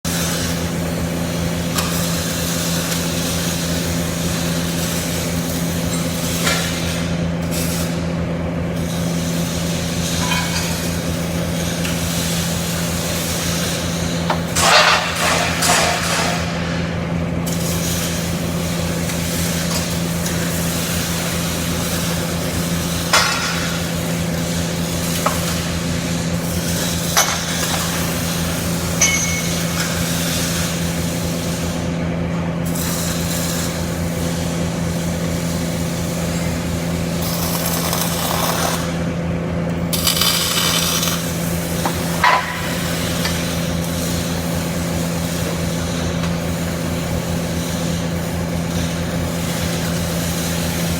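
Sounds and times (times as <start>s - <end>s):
welding arc crackling: 0.1s - 50.9s.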